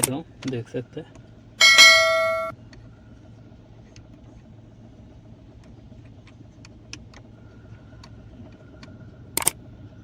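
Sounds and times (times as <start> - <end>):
car ac low hum: 0.0 - 10.0
bell-like chime: 1.6 - 2.5.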